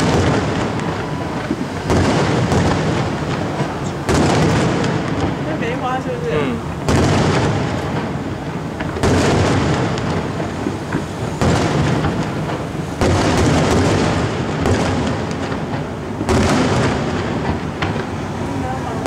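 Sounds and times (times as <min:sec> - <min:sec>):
fireworks booming: 0:00.0 - 0:19.0.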